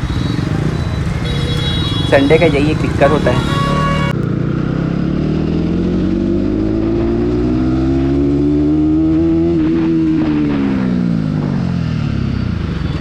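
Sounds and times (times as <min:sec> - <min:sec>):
motorcycle engine pulling: 0:00.0 - 0:04.1.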